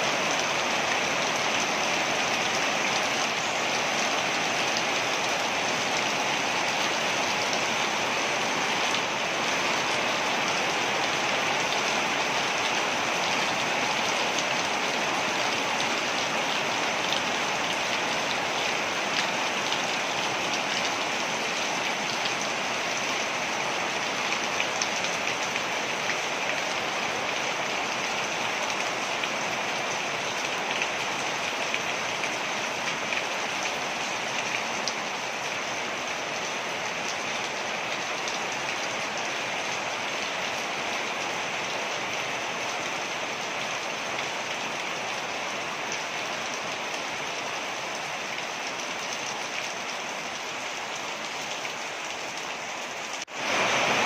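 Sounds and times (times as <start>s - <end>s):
waterfall rushing and splashing: 0.0s - 54.0s.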